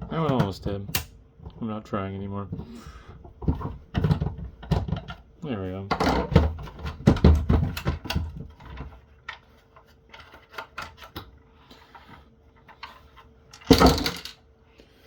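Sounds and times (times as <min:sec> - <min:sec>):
plastic clicks and knocks: 0:03.4 - 0:05.2, 0:05.9 - 0:09.4.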